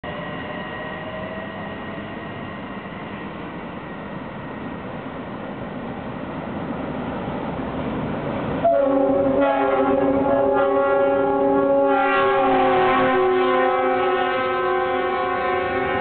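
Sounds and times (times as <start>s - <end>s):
diesel locomotive engine: 0.0s - 16.0s
train air horn blast: 8.6s - 16.0s.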